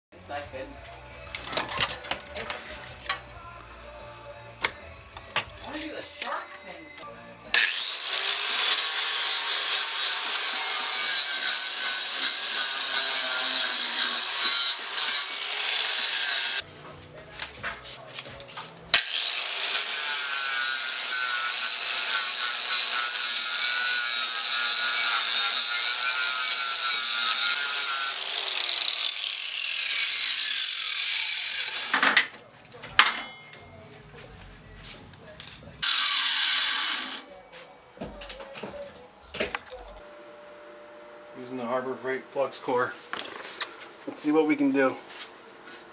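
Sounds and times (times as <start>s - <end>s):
power grinder on steel: 7.5s - 16.6s, 18.9s - 32.3s, 35.8s - 37.3s.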